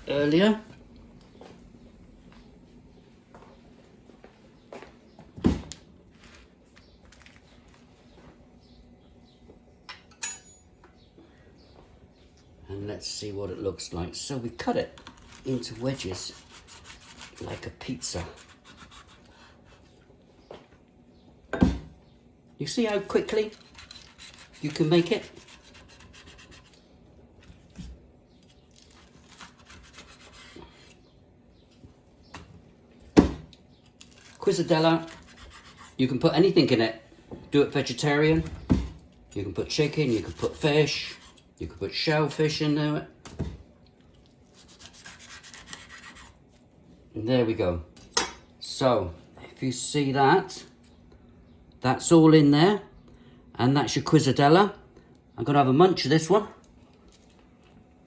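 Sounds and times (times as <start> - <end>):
knife scraping chopping board: 15.0 - 19.9, 23.4 - 26.8, 29.0 - 31.0, 34.1 - 36.0, 44.6 - 46.4.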